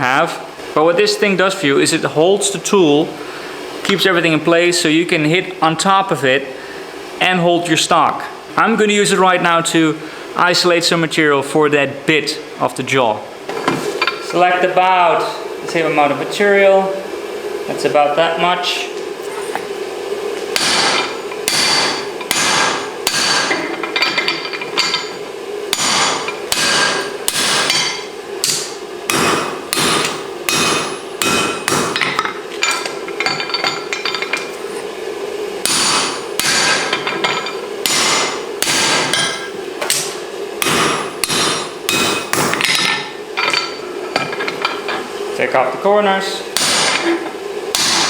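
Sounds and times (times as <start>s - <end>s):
steady hum: 0.0s - 48.0s
hammer ringing on metal: 20.6s - 23.5s, 25.8s - 32.0s, 46.6s - 47.0s, 47.8s - 48.0s.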